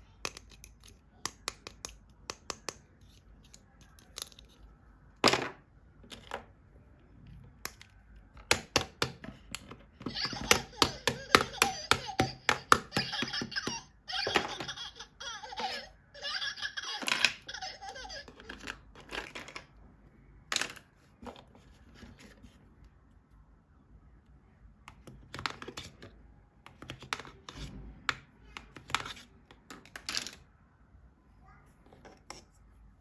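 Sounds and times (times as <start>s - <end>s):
plastic toys clicking and tapping: 0.0s - 6.6s, 7.4s - 19.8s, 24.9s - 30.5s
toy electronic voice: 10.1s - 18.5s.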